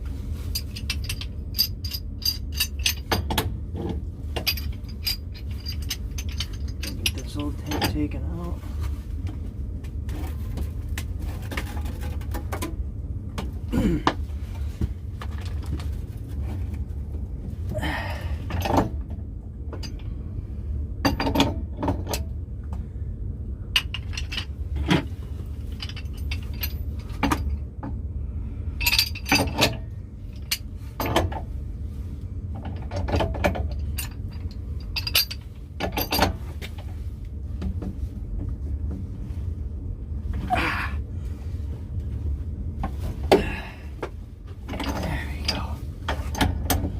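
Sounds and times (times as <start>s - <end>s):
steady low hum: 0.0s - 46.9s
metal tools and fittings clinking: 0.4s - 8.5s, 23.8s - 27.6s, 28.8s - 31.4s, 32.6s - 36.4s, 44.7s - 46.9s.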